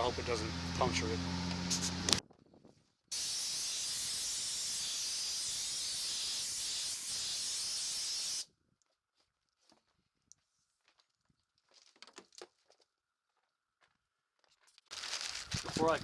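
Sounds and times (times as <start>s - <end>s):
spraying hiss: 0.0s - 2.2s, 3.1s - 8.4s.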